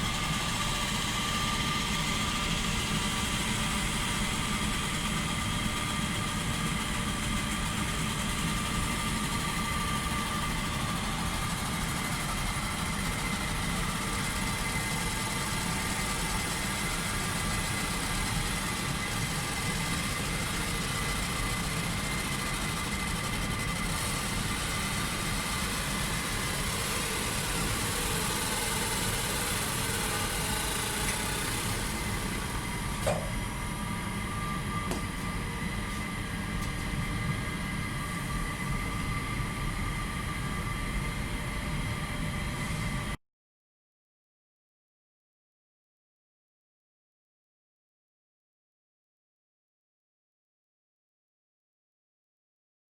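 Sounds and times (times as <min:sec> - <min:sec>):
fan drone: 0:00.0 - 0:43.2
high whining machine tones: 0:09.4 - 0:41.5.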